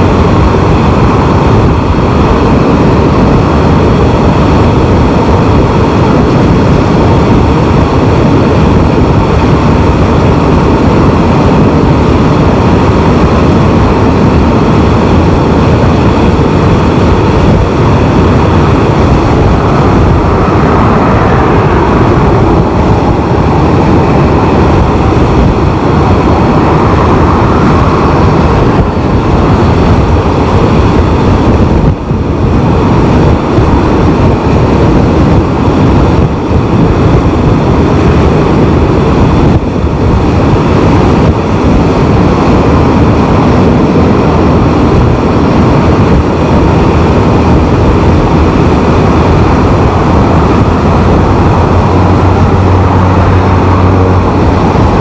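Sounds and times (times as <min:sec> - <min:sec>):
motorcycle engine running: 0:00.0 - 0:55.0
road noise: 0:00.0 - 0:55.0
wind buffeting microphone: 0:00.0 - 0:55.0.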